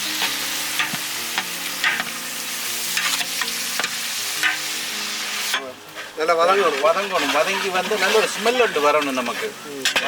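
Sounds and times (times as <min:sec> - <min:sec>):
vegetables sizzling in hot oil: 0:00.0 - 0:10.0
ladle scraping pot: 0:06.6 - 0:10.0.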